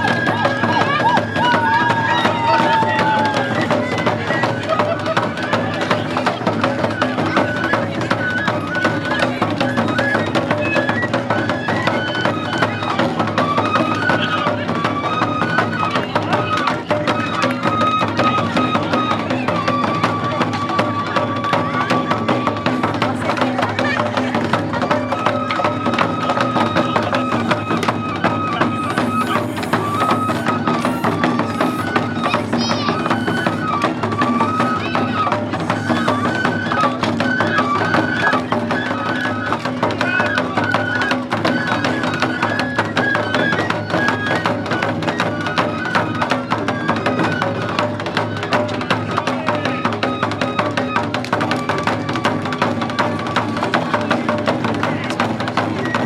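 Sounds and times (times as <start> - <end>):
fast steady drumming: 0.0 - 56.0.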